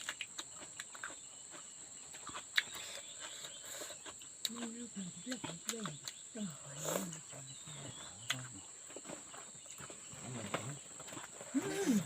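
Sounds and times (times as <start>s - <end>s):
distant voices talking: 4.5s - 12.0s.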